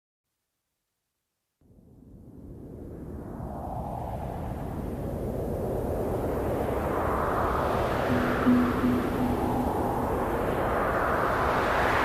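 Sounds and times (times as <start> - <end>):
synthesizer filtered noise wash: 8.1 - 10.6.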